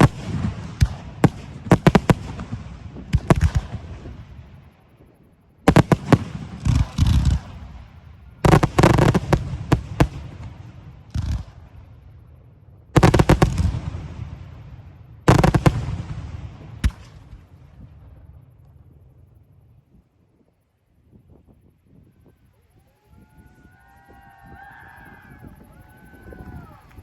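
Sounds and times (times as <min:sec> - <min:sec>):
fireworks bangs: 0:00.0 - 0:04.6, 0:05.7 - 0:18.7.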